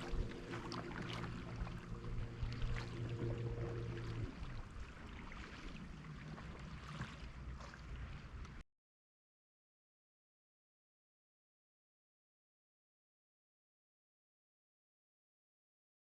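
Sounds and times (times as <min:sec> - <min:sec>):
low engine-like hum: 0:00.0 - 0:08.6
water splashing around kayak: 0:00.0 - 0:08.6.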